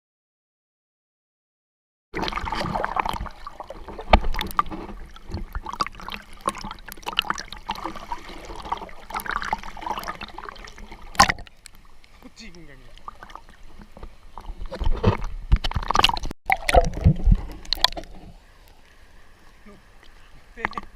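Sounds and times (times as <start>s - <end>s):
seawater splashing in surf: 2.2s - 11.5s.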